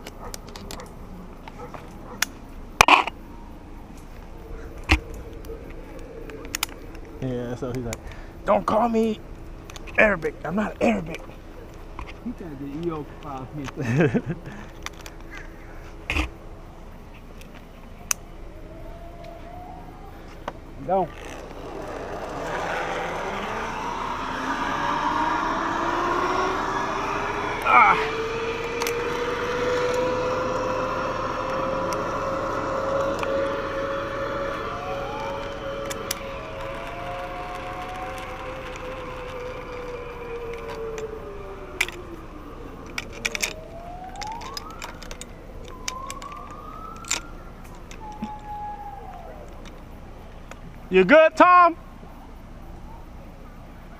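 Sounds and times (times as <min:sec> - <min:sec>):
zipline trolley whirring on cable: 0:18.6 - 0:51.0
sharp clicks: 0:42.8 - 0:48.5.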